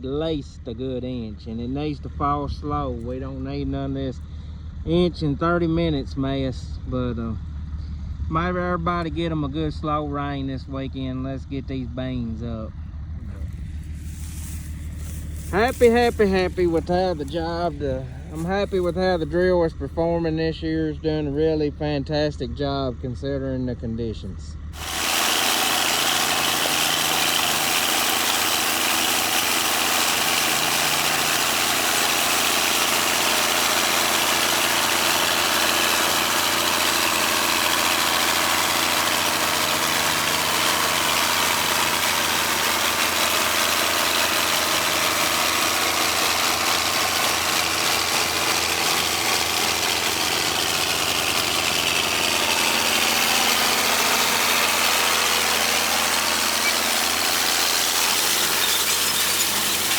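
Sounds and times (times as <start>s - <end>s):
engine running steadily: 0.0s - 59.9s.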